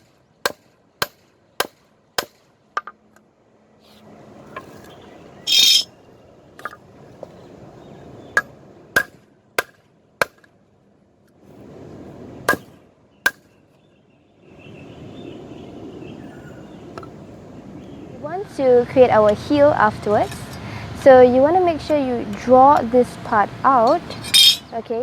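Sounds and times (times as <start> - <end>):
hammer striking metal on anvil: 5.5 - 5.9.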